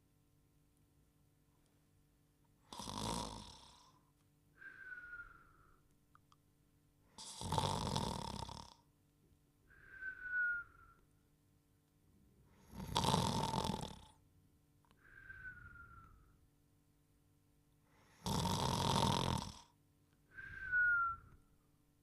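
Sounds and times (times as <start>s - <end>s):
cartoon snoring: 2.7s - 4.0s, 7.2s - 8.8s, 12.7s - 14.2s, 18.2s - 19.7s
falling whistle: 9.9s - 11.0s, 15.1s - 16.4s, 20.4s - 21.4s.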